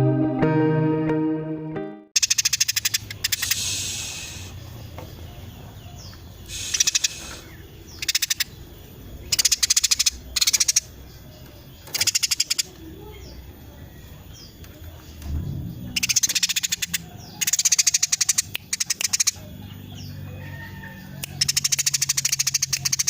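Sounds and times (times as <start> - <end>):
sparrow chattering chirps: 2.2 - 15.1, 16.0 - 23.0.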